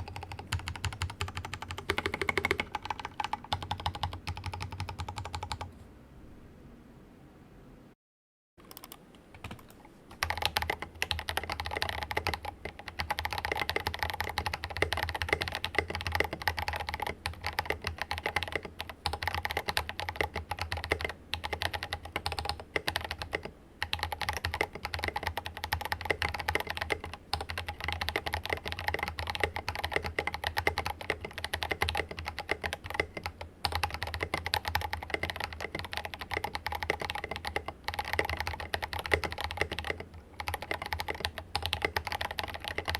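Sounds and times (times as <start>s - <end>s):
mechanical keyboard typing: 0.0s - 5.7s, 8.6s - 42.9s.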